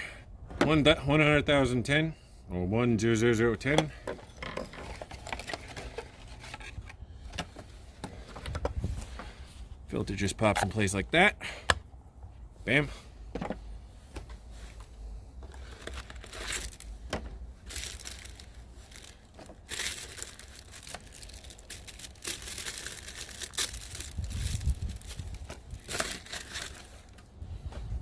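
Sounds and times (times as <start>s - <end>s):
packaging crinkling and tearing: 15.5s - 16.9s, 17.6s - 27.2s.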